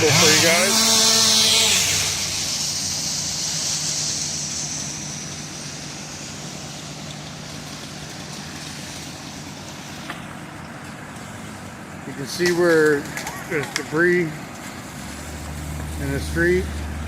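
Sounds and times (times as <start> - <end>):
chainsaw engine running: 0.0 - 7.0.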